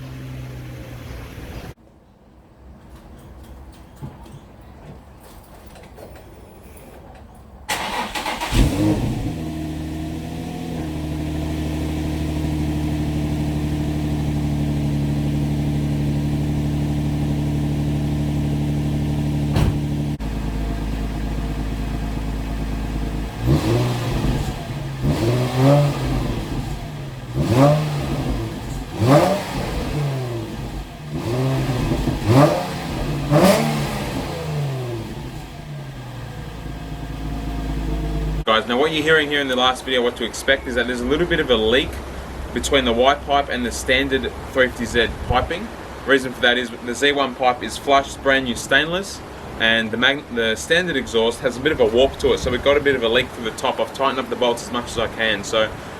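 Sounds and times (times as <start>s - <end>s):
car engine starting and idling: 0.0s - 1.8s, 7.7s - 39.4s
engine revving in short blips: 7.7s - 15.2s, 16.0s - 38.5s.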